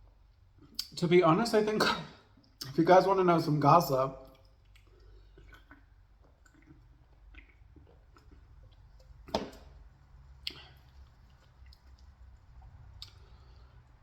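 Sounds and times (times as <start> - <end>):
mouth smacks: 0.6 - 1.0, 4.3 - 8.4, 10.4 - 12.1
person chewing food: 4.3 - 9.3, 10.3 - 14.0.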